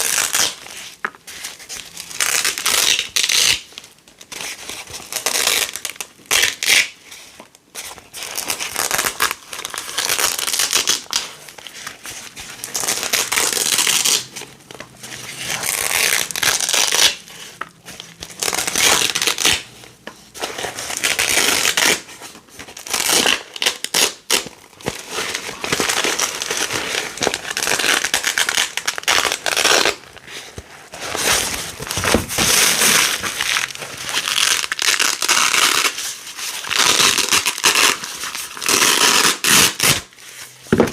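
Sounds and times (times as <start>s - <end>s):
hook-and-loop tape ripping: 0.0s - 0.6s, 1.8s - 3.8s, 5.0s - 7.0s, 12.6s - 14.4s, 15.2s - 17.3s, 18.0s - 19.8s, 20.5s - 22.1s, 22.8s - 30.3s, 31.0s - 40.2s.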